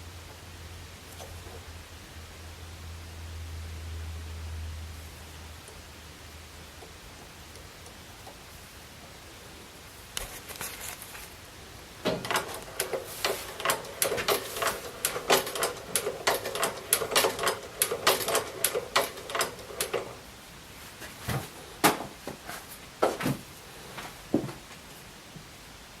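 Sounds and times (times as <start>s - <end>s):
sewing machine clattering: 12.0s - 20.2s.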